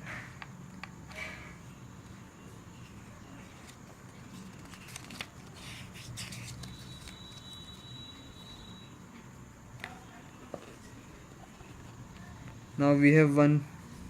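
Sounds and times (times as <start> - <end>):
packaging rustling: 3.6 - 7.5.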